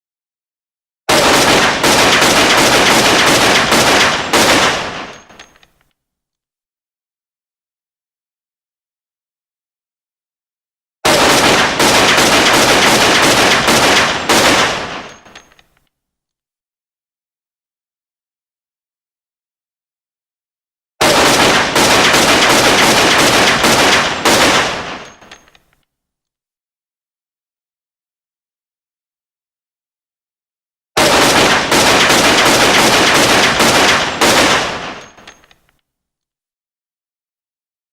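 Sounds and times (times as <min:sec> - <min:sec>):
pistol firing rapid shots: 0:01.1 - 0:05.6, 0:11.1 - 0:15.5, 0:21.0 - 0:25.5, 0:31.0 - 0:35.6.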